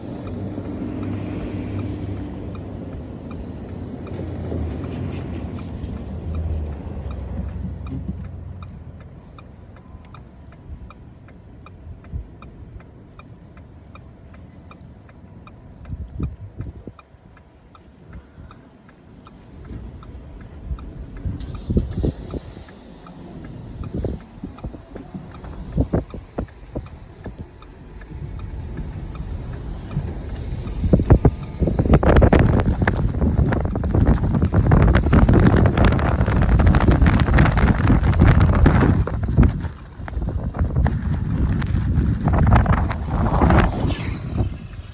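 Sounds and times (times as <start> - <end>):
turn signal clicking: 0.0 - 44.8
car engine and tyres rumbling: 0.0 - 44.9.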